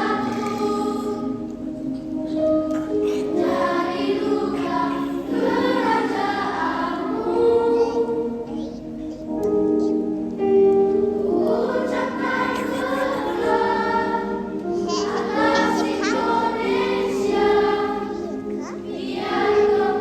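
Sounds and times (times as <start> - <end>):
children's choir singing: 0.0 - 9.7, 11.0 - 20.0.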